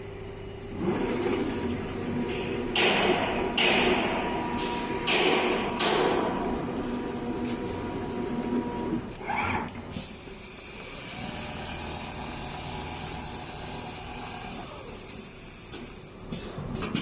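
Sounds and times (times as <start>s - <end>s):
constant low hum: 0.0s - 15.1s
sewing machine high whine: 6.4s - 16.2s.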